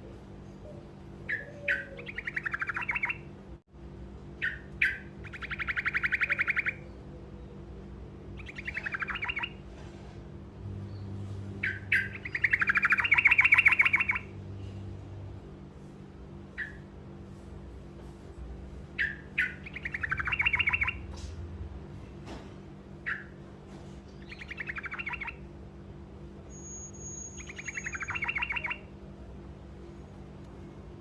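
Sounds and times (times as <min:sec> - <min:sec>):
steady low hum: 0:00.0 - 0:31.0
bulbul singing rolling trill: 0:00.5 - 0:03.4, 0:04.4 - 0:09.6, 0:10.9 - 0:14.4, 0:19.0 - 0:21.1, 0:24.2 - 0:25.6, 0:26.4 - 0:29.0.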